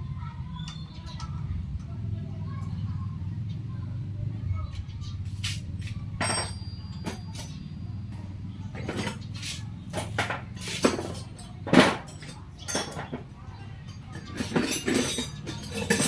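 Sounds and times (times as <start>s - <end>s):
metallic clinks and knocks: 6.1s - 16.0s.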